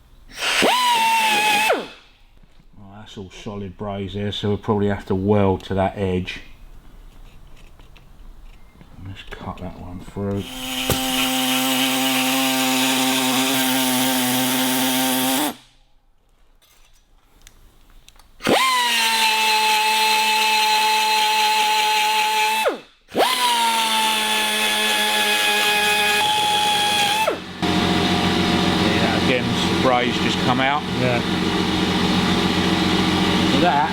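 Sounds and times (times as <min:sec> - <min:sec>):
cut-off tool cutting steel: 0:10.4 - 0:15.7, 0:18.4 - 0:33.9.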